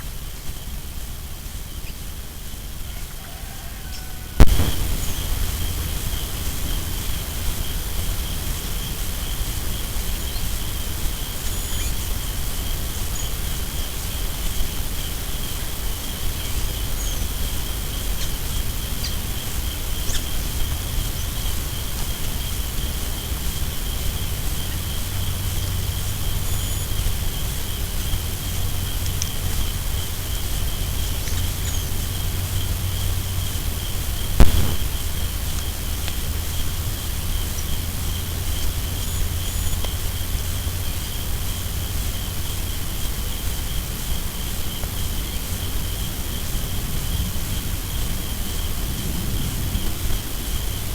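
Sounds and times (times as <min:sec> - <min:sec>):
high-pitched insect trill: 0:00.3 - 0:50.9
low rumble: 0:04.3 - 0:08.2, 0:34.3 - 0:35.7
sharp knock: 0:34.4 - 0:35.0.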